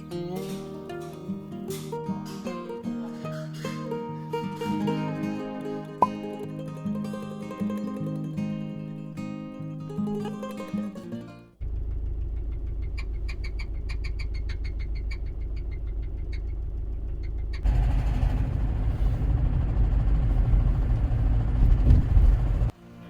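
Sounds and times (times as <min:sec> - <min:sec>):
car engine rumbling: 0:11.6 - 0:22.7.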